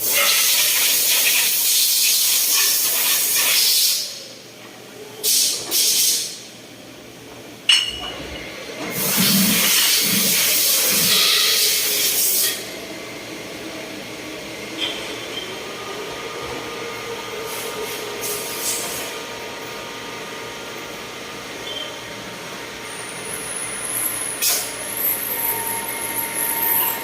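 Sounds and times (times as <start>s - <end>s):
machine hum: 6.8s - 27.0s.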